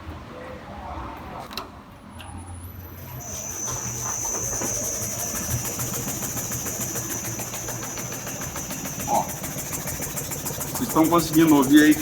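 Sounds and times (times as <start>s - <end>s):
vibration platform whining and rattling: 2.7s - 12.0s
shock absorber knocking: 4.1s - 12.0s.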